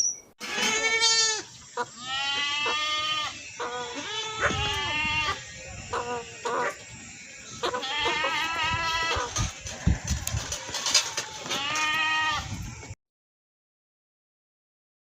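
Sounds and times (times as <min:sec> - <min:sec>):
goat bleating: 0:00.4 - 0:06.8, 0:07.6 - 0:12.6.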